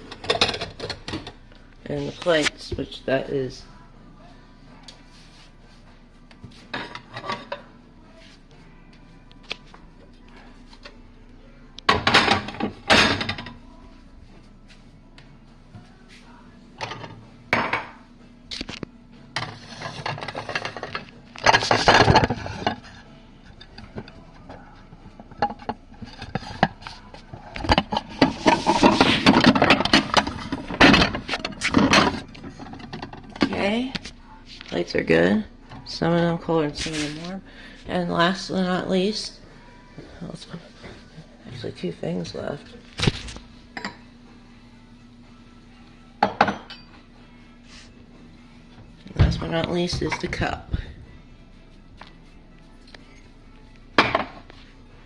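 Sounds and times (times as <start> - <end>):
plates and bowls clinking: 0.1 - 1.4, 6.7 - 7.7, 16.8 - 18.0, 19.4 - 33.6, 43.7 - 44.1, 46.2 - 47.0.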